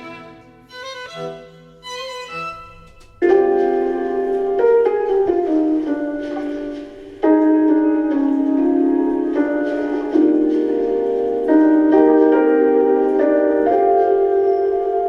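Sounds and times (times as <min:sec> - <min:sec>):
piano-like keyboard chords: 0:00.0 - 0:15.0.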